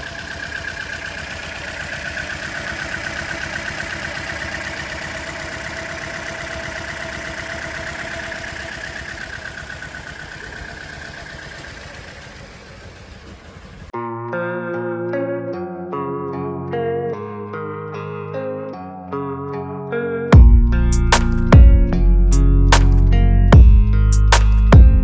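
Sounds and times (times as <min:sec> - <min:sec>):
car engine idling with whine: 0:00.0 - 0:13.9, 0:20.4 - 0:25.0
guitar music: 0:13.9 - 0:25.0.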